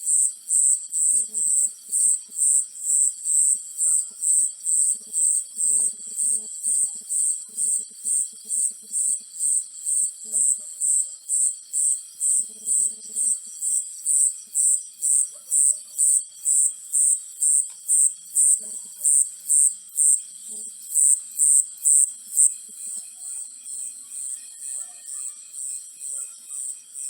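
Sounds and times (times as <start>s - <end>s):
cricket chirping: 0.0s - 27.0s.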